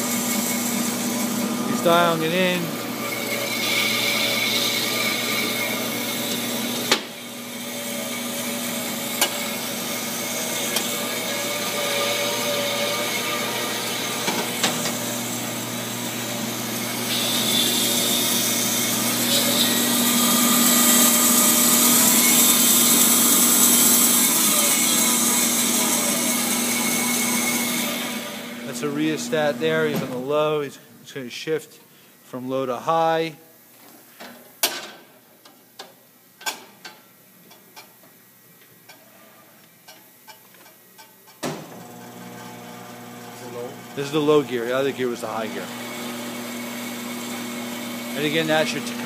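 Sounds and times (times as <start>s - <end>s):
band saw humming and hissing: 0.0s - 30.6s, 41.8s - 49.0s.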